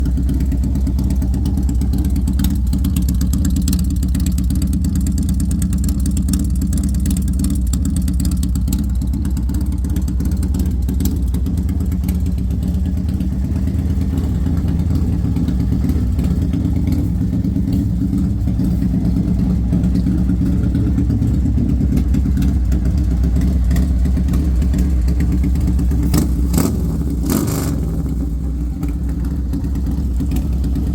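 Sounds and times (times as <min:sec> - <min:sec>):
motorcycle engine running unevenly: 0:00.0 - 0:30.9.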